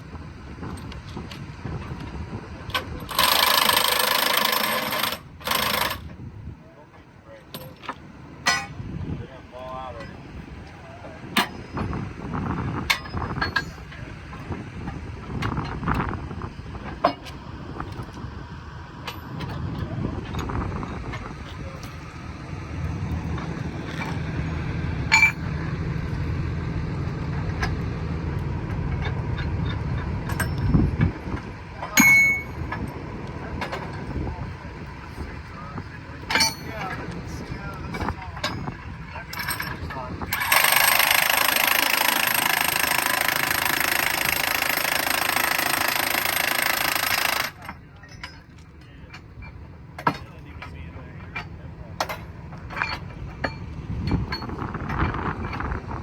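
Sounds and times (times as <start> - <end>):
low engine rumble: 0.0 - 56.0
ringing metal clank: 8.4 - 8.8, 25.1 - 25.5, 29.7 - 30.8, 31.8 - 32.8, 36.3 - 37.0
impact wrench hammering: 32.0 - 32.6, 40.4 - 47.7.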